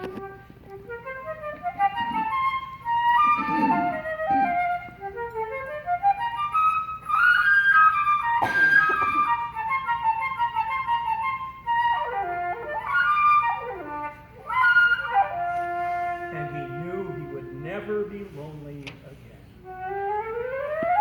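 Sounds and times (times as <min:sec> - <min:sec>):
solo flute playing: 0:00.0 - 0:18.5, 0:19.6 - 0:21.0.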